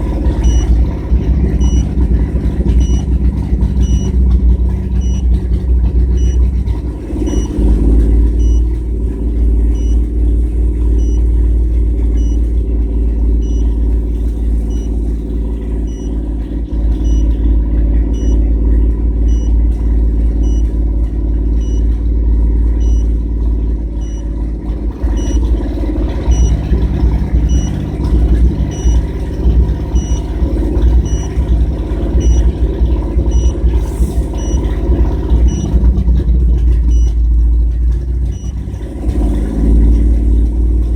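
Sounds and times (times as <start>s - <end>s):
car engine misfiring: 0.0s - 40.9s
faint high beep: 0.4s - 0.8s, 1.6s - 1.9s, 2.8s - 3.1s, 5.0s - 5.3s, 8.4s - 8.7s, 9.7s - 10.1s, 18.2s - 18.4s, 19.3s - 19.6s, 21.6s - 21.9s, 22.8s - 23.1s, 27.4s - 27.8s, 28.7s - 29.1s, 29.9s - 30.3s, 32.2s - 32.5s, 34.4s - 34.7s.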